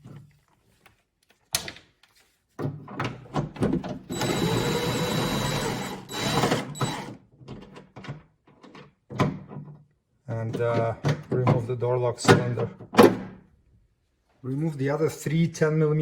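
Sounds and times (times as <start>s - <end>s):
impact driver whine: 4.1s - 7.2s.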